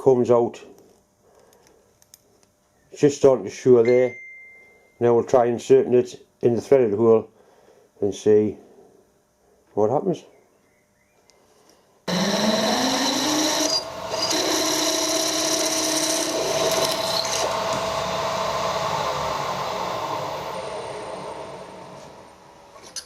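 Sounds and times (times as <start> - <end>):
power tool motor whine: 12.1 - 22.4.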